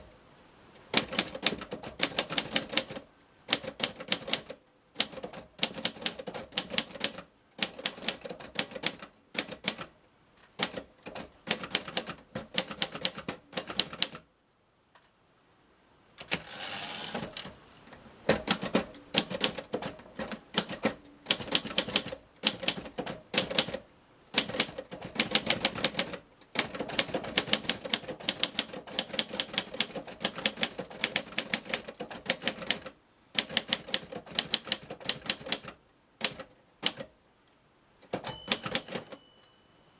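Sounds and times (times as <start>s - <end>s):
typewriter carriage return: 0.9s - 9.9s, 10.6s - 14.2s, 16.2s - 17.6s, 18.3s - 37.1s, 38.1s - 39.4s
typewriter key strikes: 38.1s - 39.3s.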